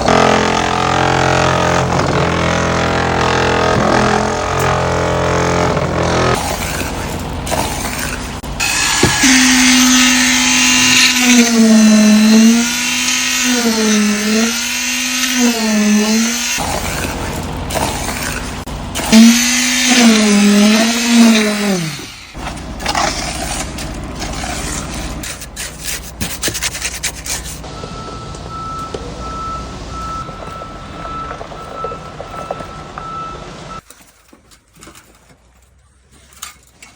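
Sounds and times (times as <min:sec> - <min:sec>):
concrete vibrator motor whining: 0:00.0 - 0:25.2.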